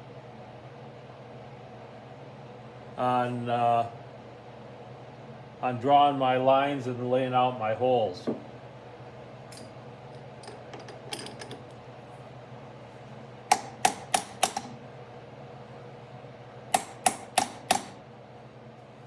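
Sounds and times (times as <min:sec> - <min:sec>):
steady low hum: 0:00.0 - 0:19.0
sharp metallic taps: 0:13.5 - 0:14.7, 0:16.8 - 0:18.0.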